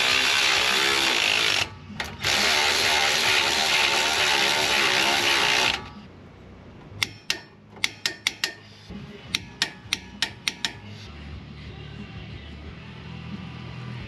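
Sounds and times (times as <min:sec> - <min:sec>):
power tool running: 0:00.0 - 0:06.0
sharp metallic clicks: 0:07.0 - 0:08.6, 0:09.3 - 0:10.9.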